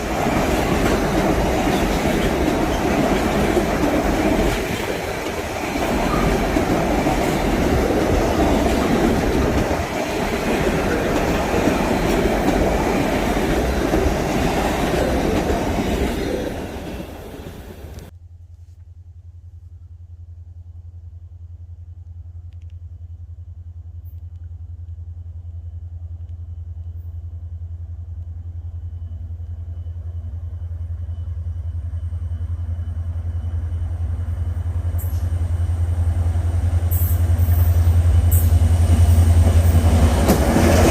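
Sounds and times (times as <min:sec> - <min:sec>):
freight train wagons rolling: 0:00.0 - 0:18.1, 0:36.4 - 0:40.9.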